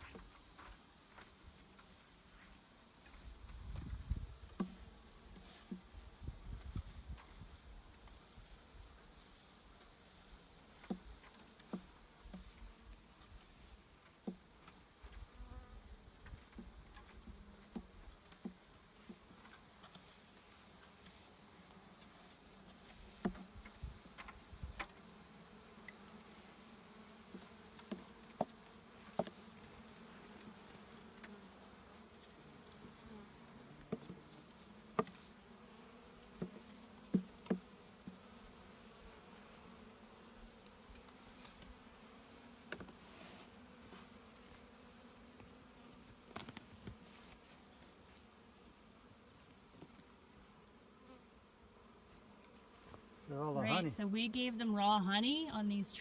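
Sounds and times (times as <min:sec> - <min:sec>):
bee swarm buzzing: 0:24.1 - 0:56.0.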